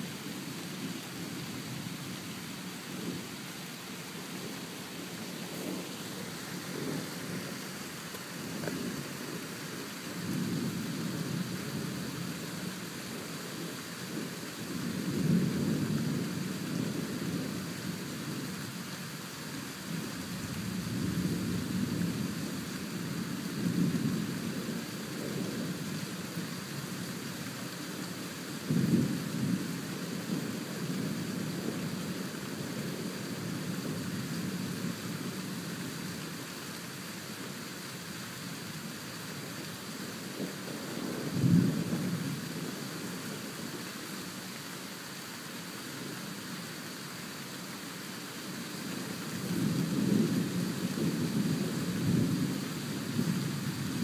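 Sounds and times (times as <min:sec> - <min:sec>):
steady rain: 0:00.0 - 0:54.0
thunder rumbling: 0:40.3 - 0:43.2.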